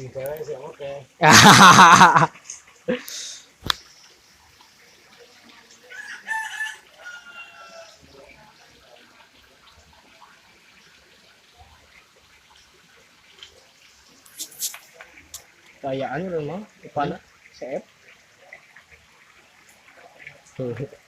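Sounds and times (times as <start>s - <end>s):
rooster crowing: 5.9s - 8.0s.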